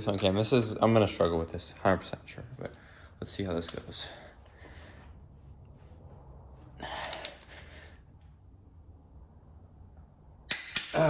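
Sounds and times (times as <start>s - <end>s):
man breathing with strain: 2.8s - 3.2s, 4.0s - 5.4s, 6.6s - 8.3s
torque wrench clicks: 7.0s - 7.5s.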